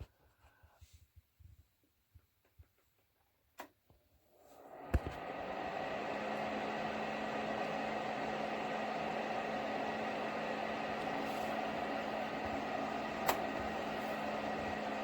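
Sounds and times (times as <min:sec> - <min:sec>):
heater fan running: 0:04.4 - 0:15.0
heater switch click: 0:04.8 - 0:05.3, 0:10.9 - 0:15.0.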